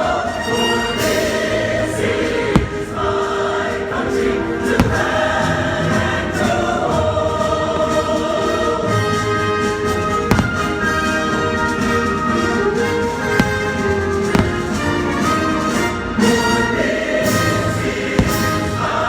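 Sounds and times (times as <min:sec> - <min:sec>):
choir singing: 0:00.0 - 0:11.1, 0:12.7 - 0:19.0
fireworks bursting: 0:01.0 - 0:06.6, 0:09.1 - 0:16.6, 0:17.2 - 0:19.0.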